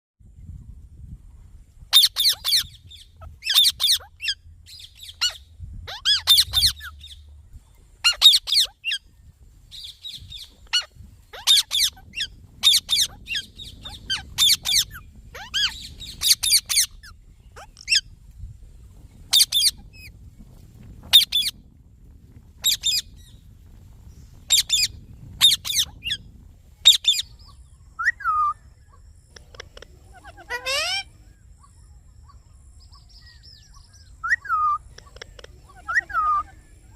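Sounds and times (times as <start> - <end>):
parrot shrill calls: 1.9 - 6.9, 8.0 - 9.0, 10.7 - 18.1, 19.3 - 20.1, 21.1 - 21.5, 24.5 - 26.2, 30.1 - 31.1, 35.7 - 36.5.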